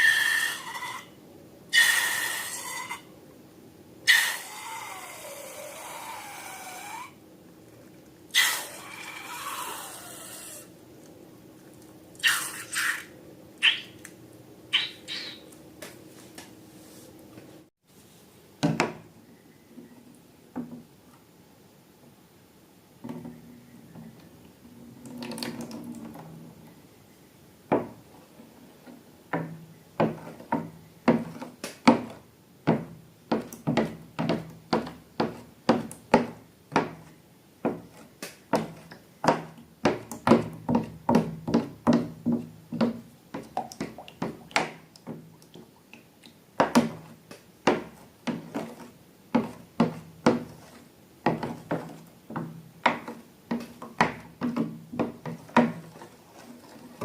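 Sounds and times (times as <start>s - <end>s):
soft rustle: 15.9s - 18.5s.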